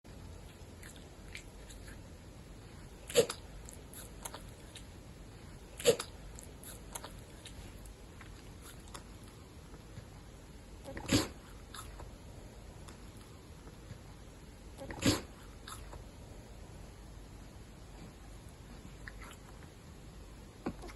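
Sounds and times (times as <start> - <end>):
wild cat sneezing: 3.1 - 3.4, 5.8 - 6.1, 10.9 - 11.4, 14.8 - 15.4.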